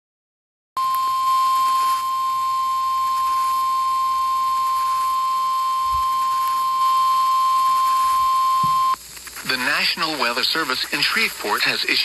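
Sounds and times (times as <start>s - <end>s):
high-pitched warning alarm tone: 0.8s - 9.0s
faint radio hiss: 0.8s - 12.0s.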